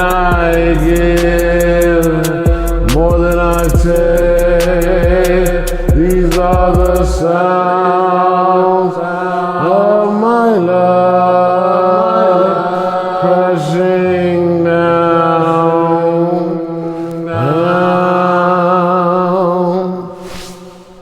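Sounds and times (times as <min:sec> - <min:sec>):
low bass notes: 0:00.0 - 0:07.2
wordless singing: 0:00.0 - 0:21.0.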